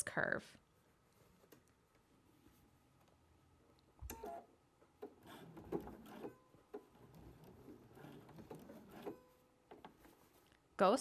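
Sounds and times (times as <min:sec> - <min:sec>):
sewing machine stitching: 0:04.1 - 0:10.5.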